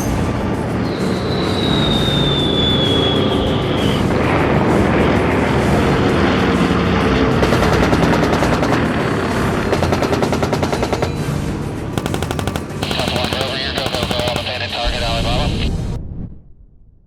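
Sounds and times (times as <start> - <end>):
droning aircraft engine: 2.8 - 10.0
machine-gun fire: 12.0 - 14.8.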